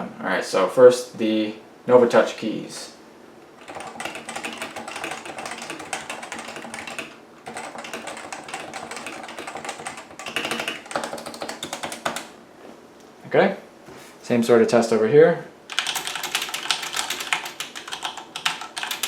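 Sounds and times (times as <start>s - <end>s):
keyboard typing: 3.6s - 12.3s, 15.7s - 19.0s.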